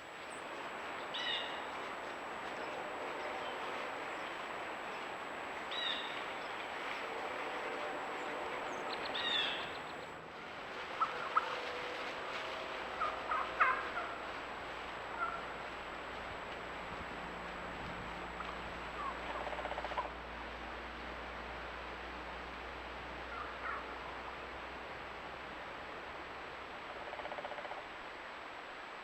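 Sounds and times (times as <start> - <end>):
steady outdoor hiss: 0.0 - 29.0
wild turkeys calling: 1.0 - 5.0, 5.6 - 6.8, 8.6 - 10.0, 10.9 - 11.6, 12.9 - 16.2, 18.3 - 20.1, 23.2 - 24.0.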